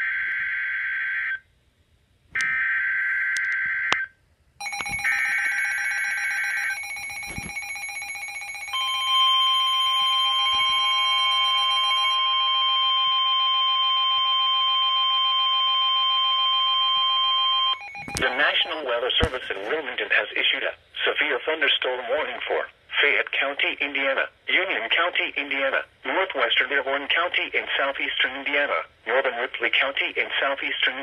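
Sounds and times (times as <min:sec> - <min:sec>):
steady alarm tone: 0:04.6 - 0:19.6
warbling data tone bursts: 0:17.7 - 0:19.0.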